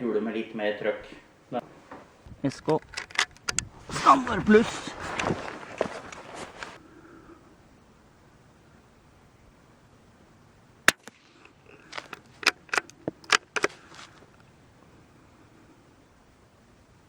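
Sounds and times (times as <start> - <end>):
rifle bolt clicking: 2.6 - 3.7, 12.0 - 13.8
rifle shot: 10.9 - 11.4.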